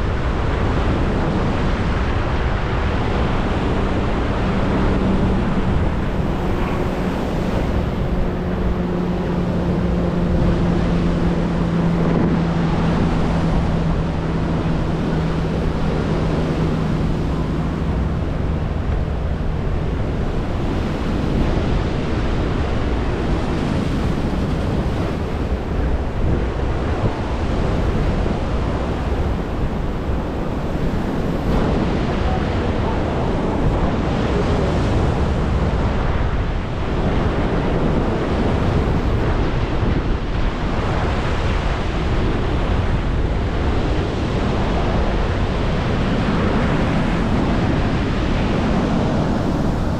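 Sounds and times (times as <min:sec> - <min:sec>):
sea surf: 0:00.0 - 0:49.9
wind buffeting microphone: 0:00.0 - 0:49.9.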